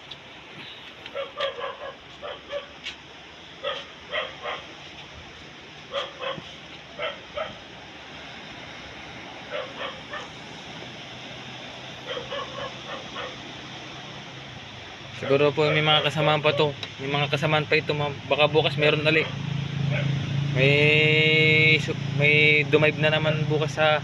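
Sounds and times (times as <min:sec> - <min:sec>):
animal yelping calls: 0:09.5 - 0:10.3, 0:12.0 - 0:13.5.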